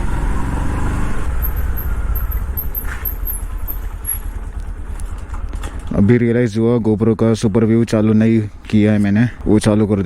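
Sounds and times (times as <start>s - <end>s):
motorcycle engine running: 0.0s - 6.3s.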